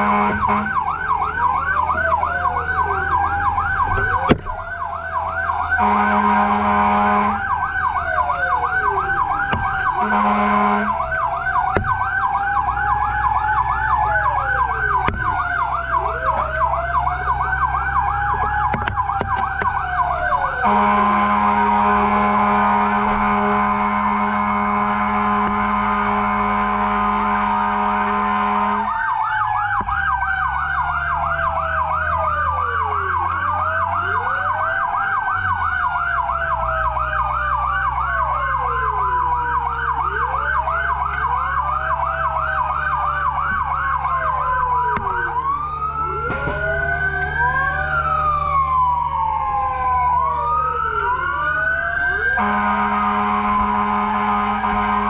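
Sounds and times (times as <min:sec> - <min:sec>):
long steady horn blast: 0:00.0 - 0:01.0, 0:05.6 - 0:07.8, 0:08.6 - 0:12.3, 0:20.0 - 0:29.1, 0:52.2 - 0:55.0
fast yelping siren: 0:00.0 - 0:55.0
slow wailing sirens: 0:00.0 - 0:55.0
truck engine running low: 0:00.0 - 0:55.0.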